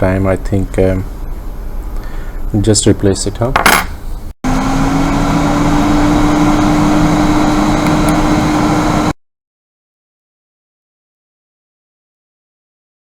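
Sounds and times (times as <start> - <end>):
hot air station blowing: 4.5 - 9.2.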